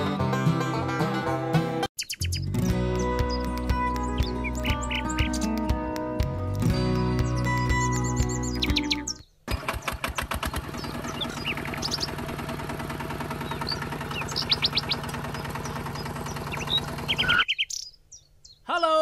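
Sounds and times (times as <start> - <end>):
birds chirping: 2.0 - 5.8, 6.8 - 19.0
small tractor motor running: 9.5 - 17.6.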